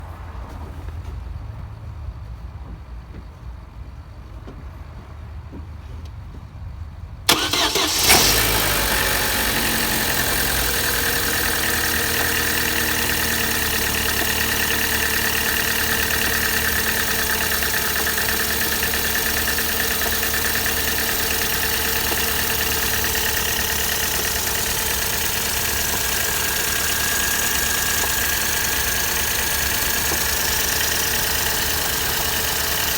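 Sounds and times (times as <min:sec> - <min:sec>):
car engine cranking: 0:07.3 - 0:32.9
car engine idling with knock: 0:07.3 - 0:32.9.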